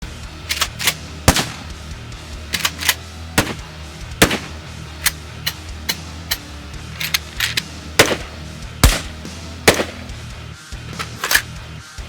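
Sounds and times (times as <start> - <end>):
low background music: 0.0 - 12.0
gunshots: 0.5 - 1.9, 2.6 - 5.2, 8.0 - 10.2.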